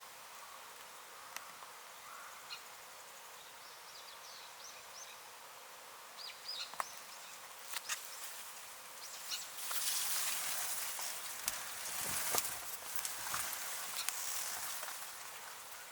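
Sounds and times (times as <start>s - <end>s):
steady hiss: 0.0s - 15.9s
bird chirps: 9.0s - 9.6s.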